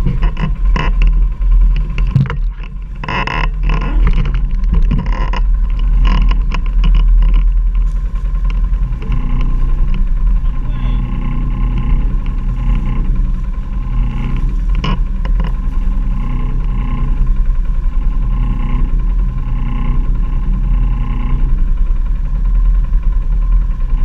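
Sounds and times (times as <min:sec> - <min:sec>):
quad engine running: 0:00.0 - 0:24.0
sharp knocks: 0:01.9 - 0:05.4.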